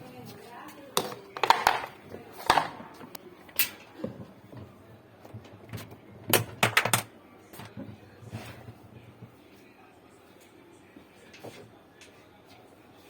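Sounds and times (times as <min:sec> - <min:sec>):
hard objects clicking and knocking: 0:01.0 - 0:03.0.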